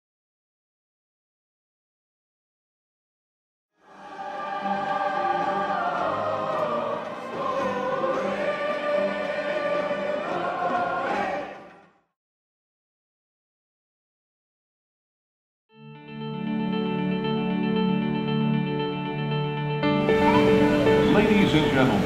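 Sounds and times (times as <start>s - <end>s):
choir singing long notes: 3.8s - 12.0s.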